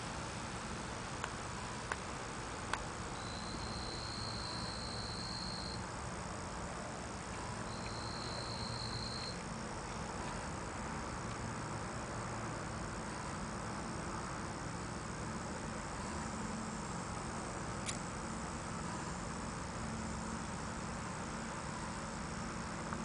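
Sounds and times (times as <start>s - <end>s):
outdoor hiss: 0.0s - 23.0s.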